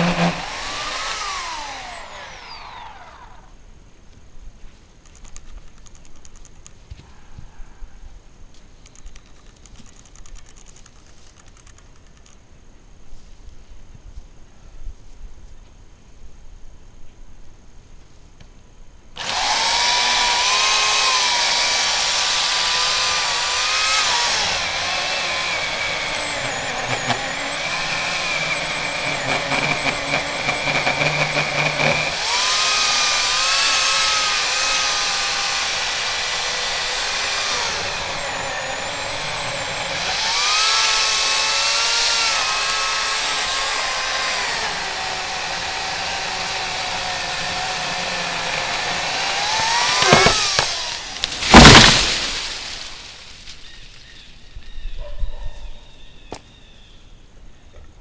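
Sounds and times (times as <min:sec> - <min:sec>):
electric chainsaw cutting wood: 0:00.0 - 0:03.6, 0:19.2 - 0:54.2.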